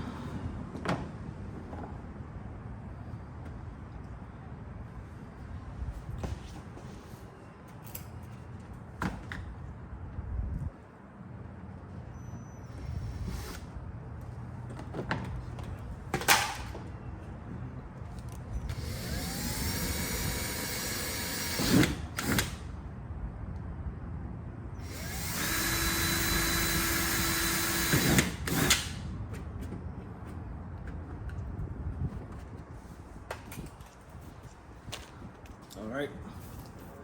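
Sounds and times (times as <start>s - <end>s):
power drill whining: 18.7s - 22.6s, 24.8s - 29.0s.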